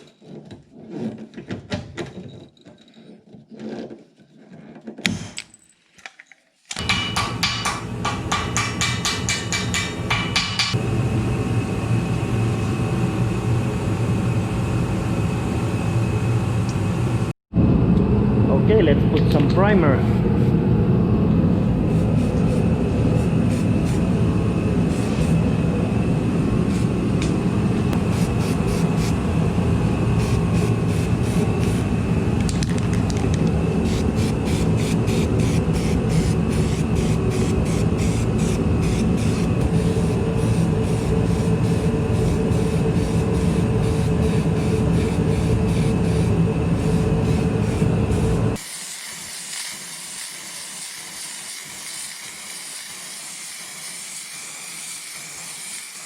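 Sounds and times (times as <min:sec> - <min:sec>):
spray gun machine drone: 0:06.8 - 0:17.3, 0:18.5 - 0:56.0
hiss of spraying air: 0:33.9 - 0:56.0.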